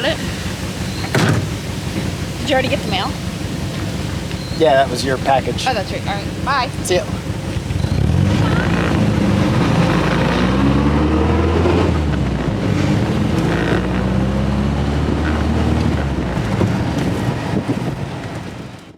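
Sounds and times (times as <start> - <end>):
car engine accelerating: 0.0 - 18.9
wind noise on microphone: 6.0 - 18.9.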